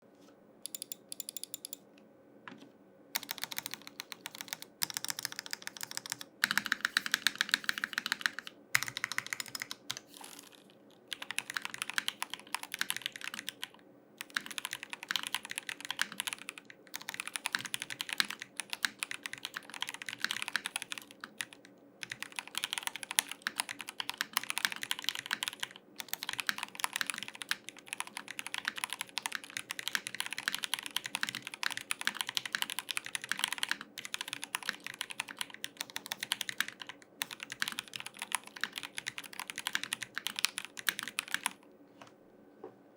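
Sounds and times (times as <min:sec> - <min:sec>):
mechanical keyboard key clacks: 0:00.7 - 0:01.8.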